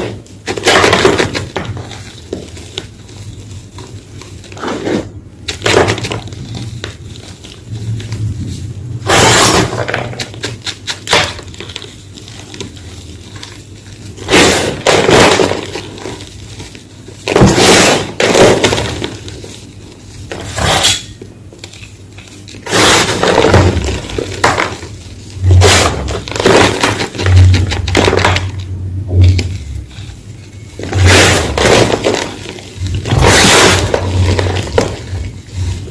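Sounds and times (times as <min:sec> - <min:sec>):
chalk block crunching: 0:29.2 - 0:35.9.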